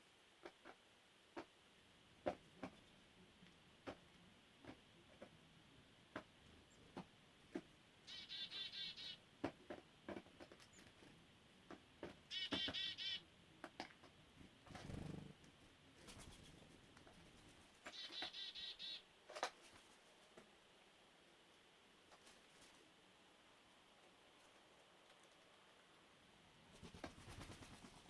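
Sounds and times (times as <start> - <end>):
magpies chattering: 8.1 - 9.2, 17.9 - 19.0.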